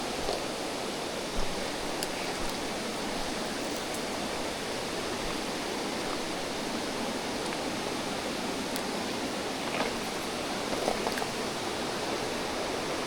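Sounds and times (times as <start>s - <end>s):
stream rushing over rocks: 0.0s - 13.0s.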